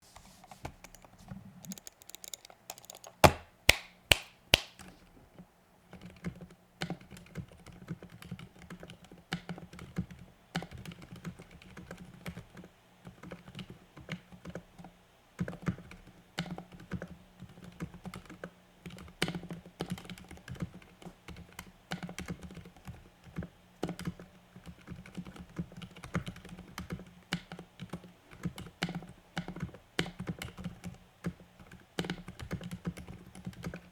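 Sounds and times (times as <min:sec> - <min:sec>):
soft mechanical keyboard typing: 0:00.1 - 0:03.5, 0:05.8 - 0:33.9
sharp keyboard knocks: 0:01.6 - 0:04.9.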